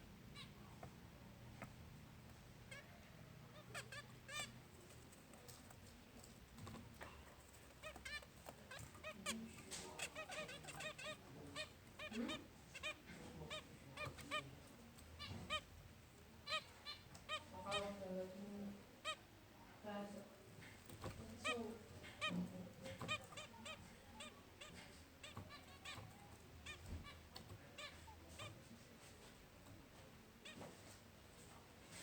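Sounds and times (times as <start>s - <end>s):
finches honking calls: 7.8s - 14.5s, 16.4s - 18.1s, 21.2s - 28.6s.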